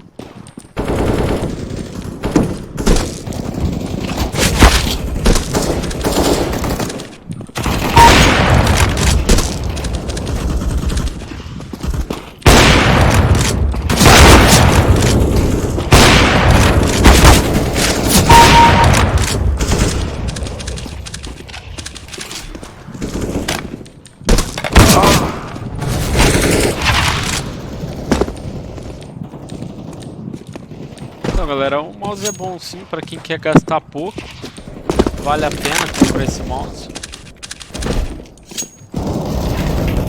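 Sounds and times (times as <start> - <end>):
video game gunfire: 0.2 - 21.2.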